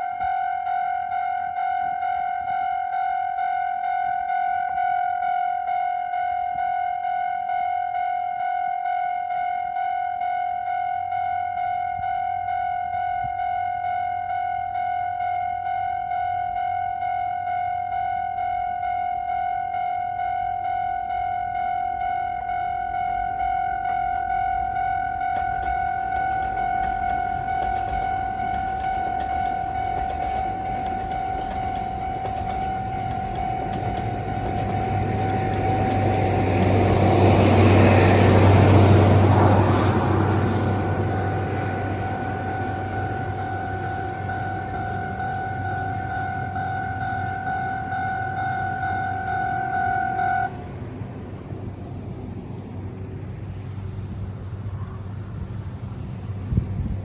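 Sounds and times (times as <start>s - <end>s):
train rumble and hum: 14.2s - 57.0s
level crossing warning tone: 19.2s - 50.8s.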